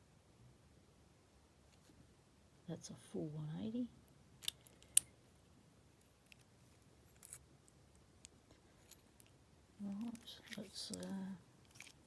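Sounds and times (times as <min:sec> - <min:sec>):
padlock and key clicks: 0:04.4 - 0:05.1.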